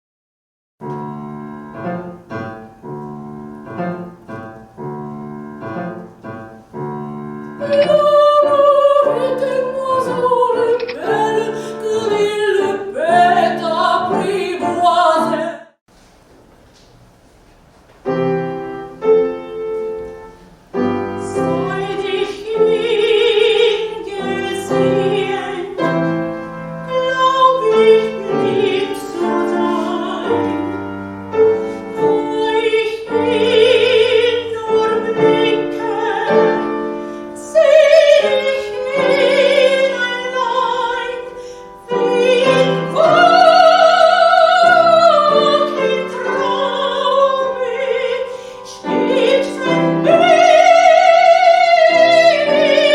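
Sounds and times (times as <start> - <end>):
piano accompaniment: 0.8 - 15.7, 17.0 - 52.9
soprano singing with vibrato: 7.6 - 15.8, 21.0 - 52.9.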